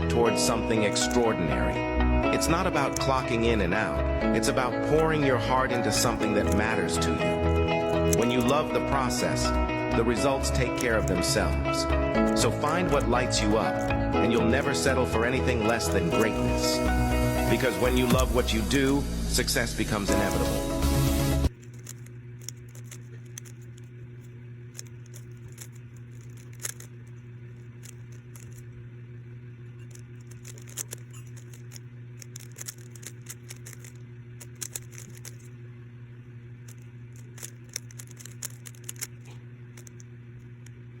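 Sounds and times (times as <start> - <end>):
steady low hum: 0.0 - 41.0
plastic cube clicks: 7.9 - 8.8, 21.6 - 23.8, 24.8 - 26.9, 29.9 - 35.5, 36.7 - 40.0.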